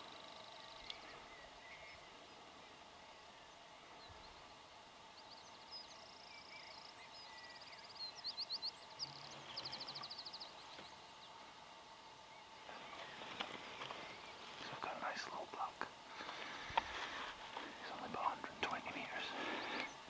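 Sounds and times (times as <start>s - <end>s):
faint outdoor background: 0.0s - 20.0s
faint rustles: 12.6s - 20.0s.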